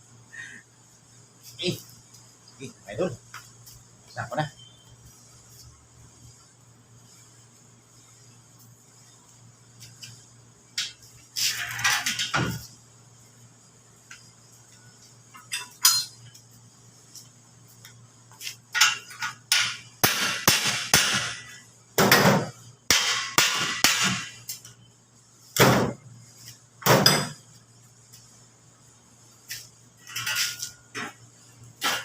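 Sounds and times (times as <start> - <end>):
tools clanking on metal: 15.4 - 16.3, 18.7 - 19.8, 30.0 - 31.2.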